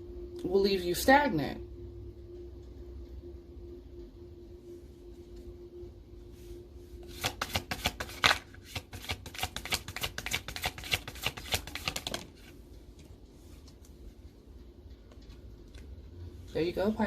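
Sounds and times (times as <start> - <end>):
cards being shuffled: 7.1 - 12.5.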